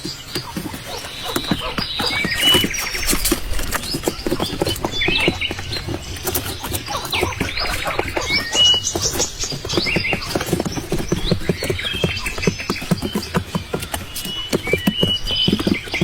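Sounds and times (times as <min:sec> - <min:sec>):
quail chirping and trilling: 0:00.0 - 0:16.0.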